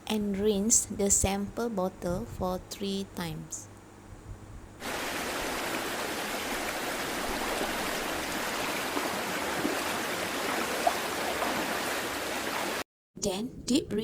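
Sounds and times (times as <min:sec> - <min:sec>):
river water flowing: 0:04.8 - 0:12.8.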